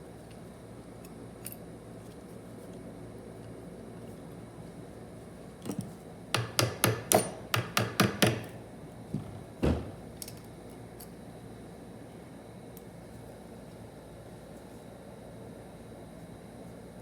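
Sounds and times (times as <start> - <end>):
sharp knocks on metal parts: 5.7 - 8.6.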